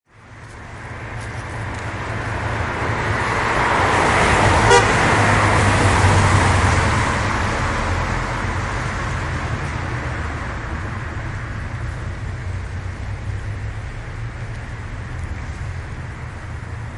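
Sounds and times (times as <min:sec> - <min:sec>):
low engine rumble: 0:00.1 - 0:16.9
tyres hissing on wet road: 0:00.4 - 0:16.9.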